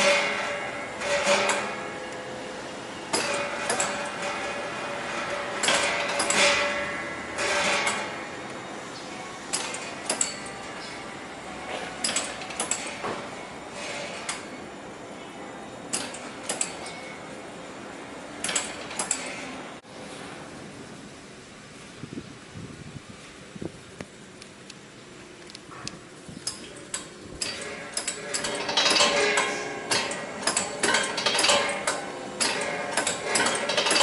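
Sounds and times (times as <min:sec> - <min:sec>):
machine clanking and clicking: 0:00.0 - 0:02.2, 0:03.0 - 0:08.4, 0:09.5 - 0:11.0, 0:11.6 - 0:14.6, 0:15.9 - 0:17.2, 0:18.4 - 0:19.6, 0:26.4 - 0:34.0.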